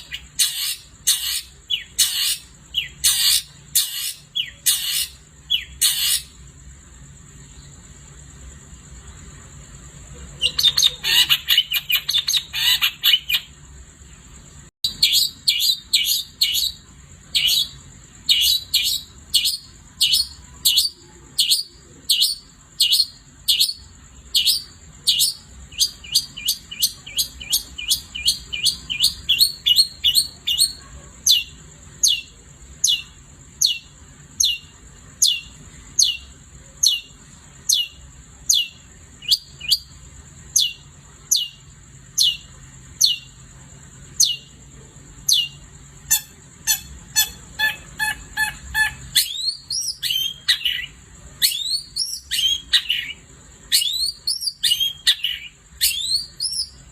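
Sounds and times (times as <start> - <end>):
bird chattering: 0.0 - 6.4, 10.3 - 13.6, 45.3 - 56.9.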